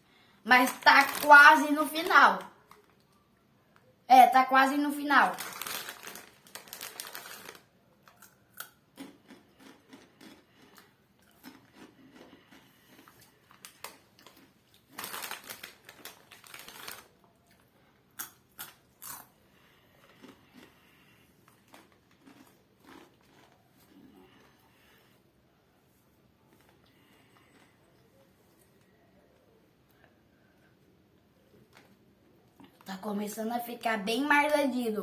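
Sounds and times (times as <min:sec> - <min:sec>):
chips being chewed: 0:05.4 - 0:25.0, 0:26.5 - 0:28.9.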